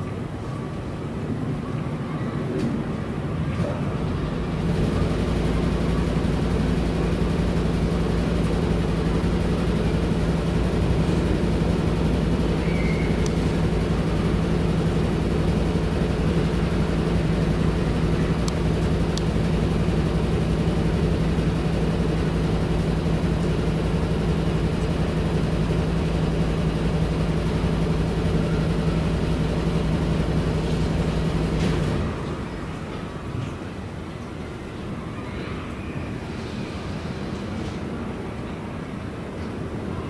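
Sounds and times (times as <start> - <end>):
low machine hum: 3.7 - 33.5.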